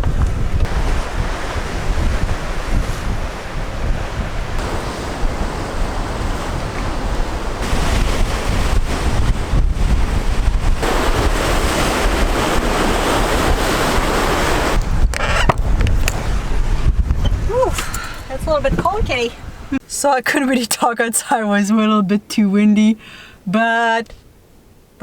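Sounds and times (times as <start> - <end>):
ocean surf rushing: 0.0 - 19.8
wind buffeting microphone: 0.0 - 19.8.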